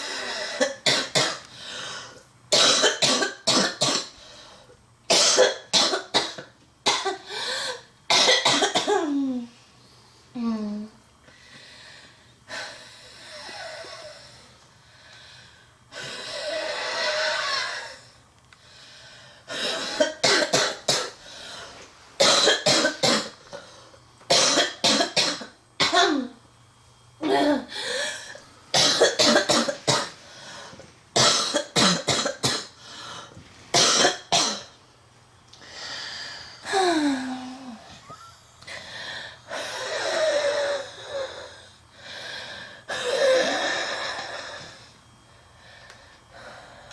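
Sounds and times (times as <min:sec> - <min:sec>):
noisy breaths: 0:00.0 - 0:00.8, 0:01.4 - 0:02.4, 0:04.1 - 0:04.8, 0:07.2 - 0:08.0, 0:11.2 - 0:20.1, 0:21.1 - 0:22.2, 0:27.7 - 0:28.7, 0:30.1 - 0:31.1, 0:32.7 - 0:33.7, 0:35.5 - 0:46.9
girl coughing: 0:00.6 - 0:01.4, 0:02.5 - 0:04.2, 0:05.1 - 0:09.5, 0:19.5 - 0:21.2, 0:22.2 - 0:23.4, 0:24.3 - 0:26.4, 0:27.2 - 0:27.7, 0:28.8 - 0:30.2, 0:31.2 - 0:32.8, 0:33.8 - 0:34.8.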